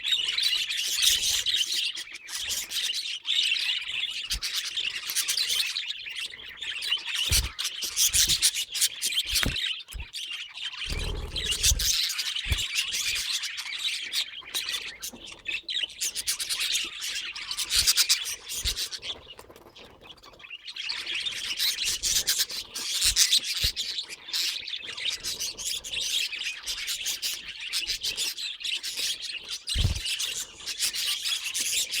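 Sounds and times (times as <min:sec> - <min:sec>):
budgerigar chattering: 0:10.8 - 0:13.2.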